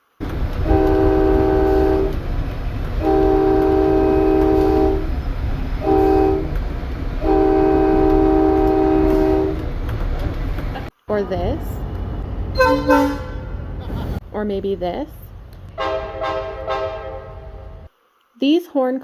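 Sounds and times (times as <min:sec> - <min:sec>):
locomotive air horn blasts: 0:00.5 - 0:02.2, 0:03.0 - 0:05.2, 0:05.8 - 0:06.6, 0:07.2 - 0:09.7, 0:12.6 - 0:13.6, 0:15.7 - 0:17.9.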